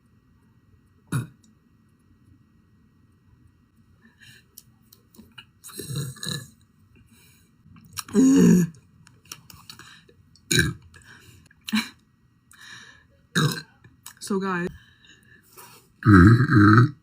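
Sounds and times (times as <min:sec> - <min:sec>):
woman burping: 0:01.1 - 0:01.4, 0:08.0 - 0:08.8, 0:13.4 - 0:13.7, 0:16.0 - 0:17.0.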